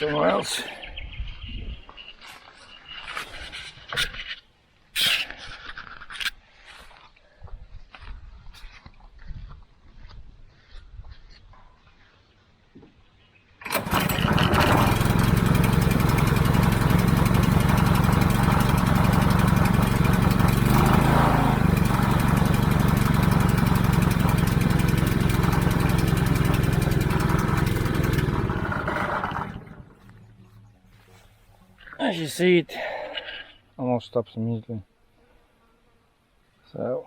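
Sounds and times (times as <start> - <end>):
petrol engine running pump: 13.6 - 30.4.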